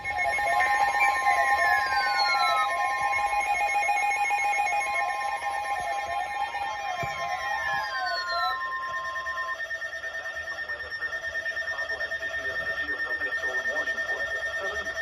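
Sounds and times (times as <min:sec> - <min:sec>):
warbling lower tone: 0:00.0 - 0:09.6
steady high alert tone: 0:00.0 - 0:15.0.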